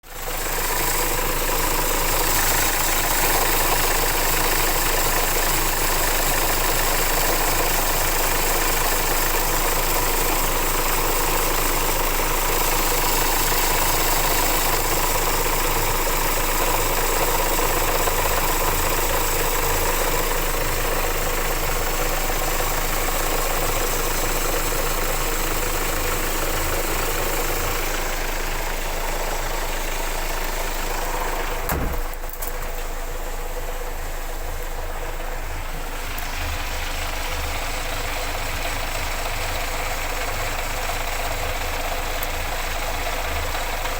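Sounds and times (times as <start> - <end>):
diesel engine idling: 0.0 - 43.9
engine pulley knocking and rattling: 0.1 - 33.0.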